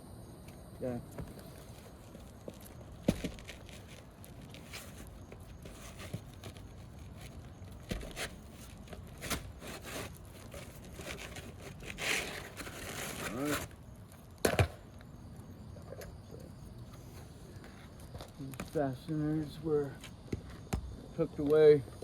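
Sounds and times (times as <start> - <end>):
tool scraping roof shingles: 1.6 - 13.8.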